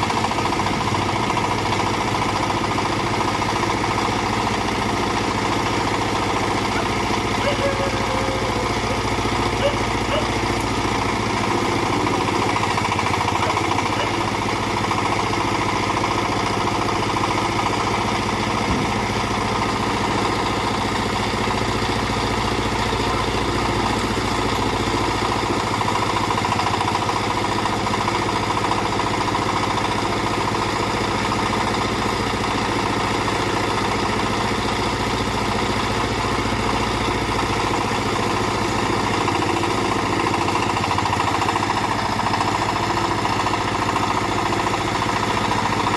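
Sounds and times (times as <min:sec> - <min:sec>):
backhoe engine running steadily: 0:00.0 - 0:45.9.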